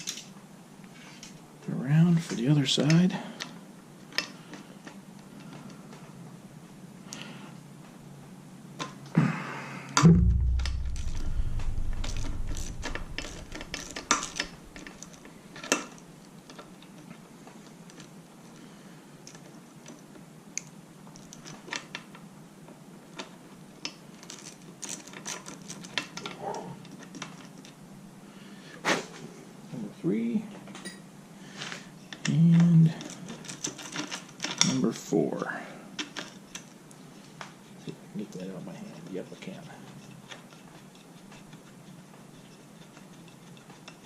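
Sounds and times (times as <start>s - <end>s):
loud thump with low rumble: 10.0s - 14.7s.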